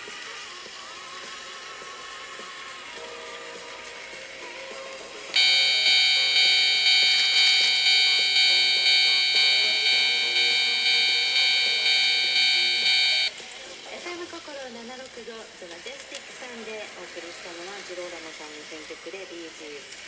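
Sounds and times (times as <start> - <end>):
level crossing bell ringing: 5.4 - 13.3.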